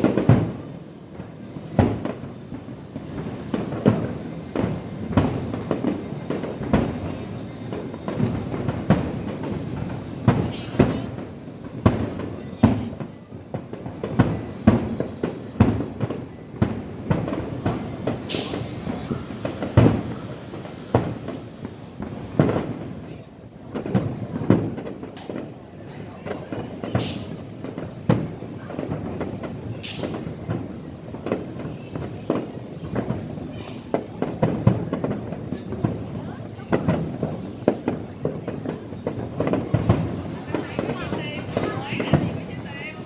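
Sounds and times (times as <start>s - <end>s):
fireworks booming: 0.0s - 43.0s
rising firework whistle: 4.6s - 10.9s, 16.7s - 23.1s.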